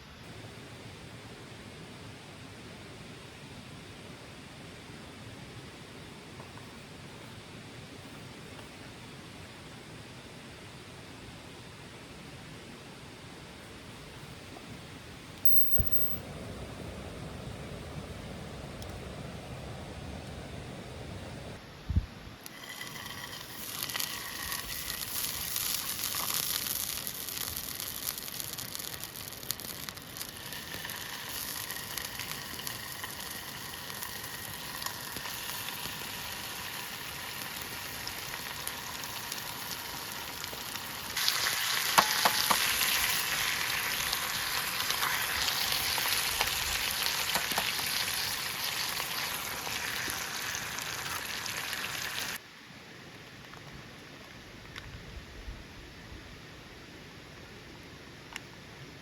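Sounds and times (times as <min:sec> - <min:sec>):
food sizzling in a pan: 0:22.5 - 0:52.4
sharp pops from pan: 0:41.2 - 0:43.2, 0:47.1 - 0:48.4.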